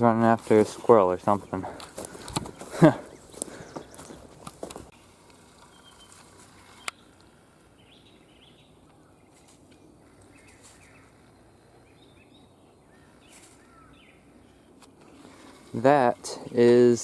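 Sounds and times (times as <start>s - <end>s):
faint bird chirps: 5.0s - 15.6s.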